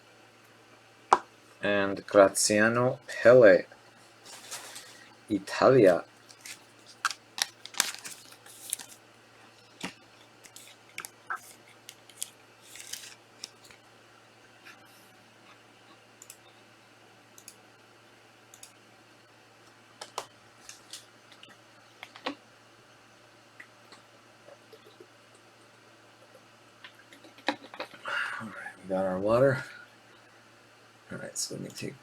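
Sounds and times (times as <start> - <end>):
faint steady hum: 0.0 - 32.0
cards handled on a table: 9.8 - 13.7.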